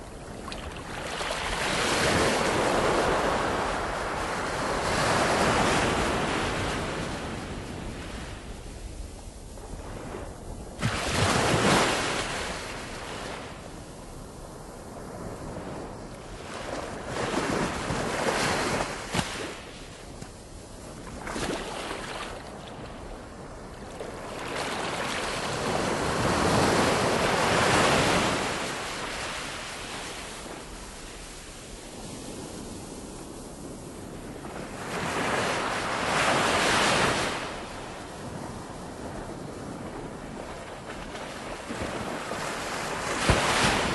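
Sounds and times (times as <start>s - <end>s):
wind: 0.0s - 43.9s
ocean waves breaking: 39.8s - 43.9s.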